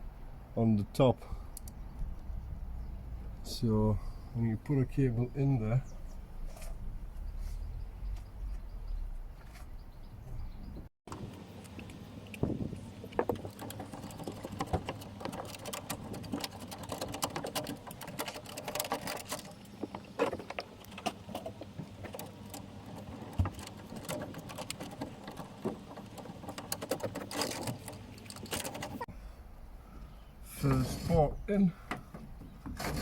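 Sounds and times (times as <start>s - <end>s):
cable clicking and scraping: 11.1s - 29.1s, 32.4s - 33.0s.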